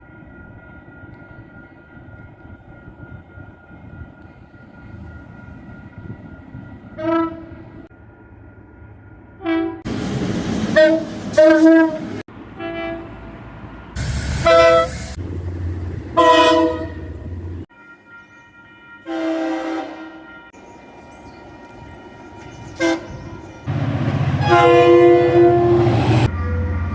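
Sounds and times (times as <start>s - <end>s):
passing train rumble: 0.0s - 26.9s
train horn short blasts: 7.0s - 7.6s, 9.4s - 9.9s, 10.8s - 13.2s, 14.3s - 15.2s, 16.2s - 20.5s, 22.8s - 23.3s, 24.3s - 26.2s.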